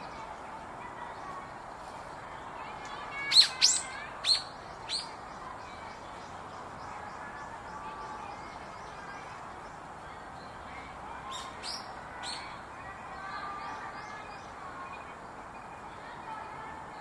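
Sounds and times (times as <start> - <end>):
sharp high bird calls: 3.2 - 5.2
faint bird chirps: 3.2 - 9.8.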